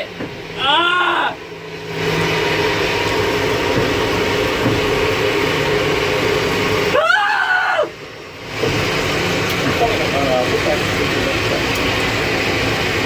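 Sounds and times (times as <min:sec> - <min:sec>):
tug engine running: 0:00.0 - 0:07.2, 0:07.8 - 0:13.0
loud rising and falling scream: 0:00.6 - 0:01.5, 0:06.8 - 0:08.0.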